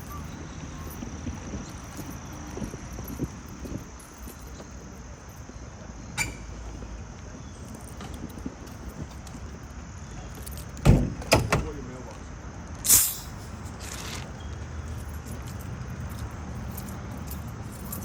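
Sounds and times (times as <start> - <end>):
vehicle engine rumble: 0.0 - 18.0
short sharp hiss: 12.8 - 14.2.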